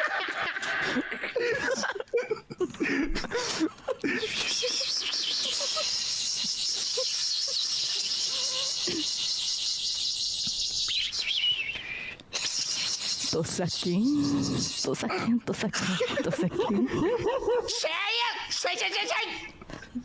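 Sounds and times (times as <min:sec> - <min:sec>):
person imitating cicada buzzing: 0:04.2 - 0:11.5, 0:12.3 - 0:15.1.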